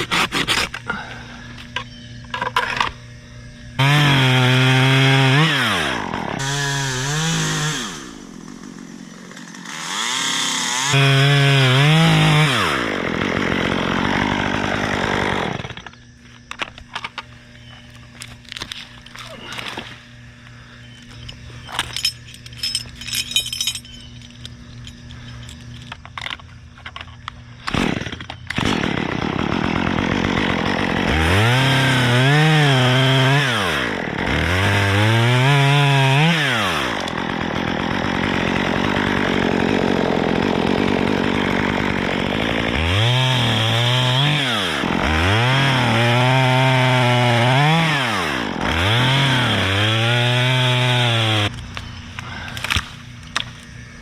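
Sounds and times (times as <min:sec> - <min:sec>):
chainsaw engine revving: 0:03.8 - 0:16.1, 0:27.5 - 0:54.0.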